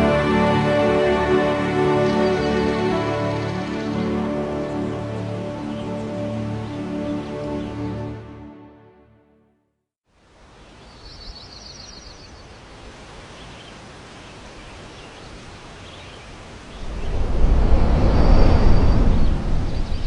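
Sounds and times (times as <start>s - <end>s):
small birds chirping and trilling: 10.7s - 20.0s
loud low rushing noise: 16.7s - 20.0s.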